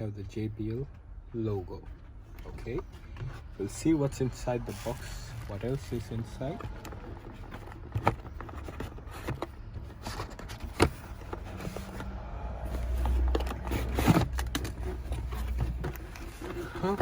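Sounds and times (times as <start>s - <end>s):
cardboard packaging scraping and rustling: 2.6s - 17.0s.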